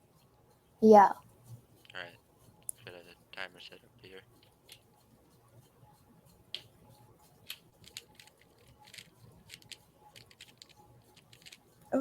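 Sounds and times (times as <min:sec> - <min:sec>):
puzzle cube plastic clicks: 0:07.5 - 0:11.6.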